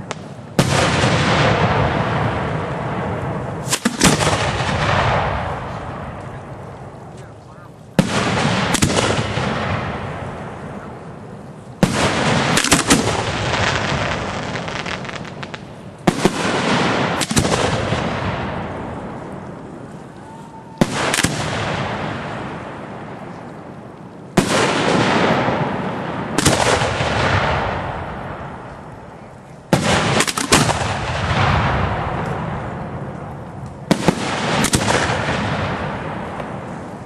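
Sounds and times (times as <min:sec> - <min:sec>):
fireworks bangs echoing: 0:00.0 - 0:37.0.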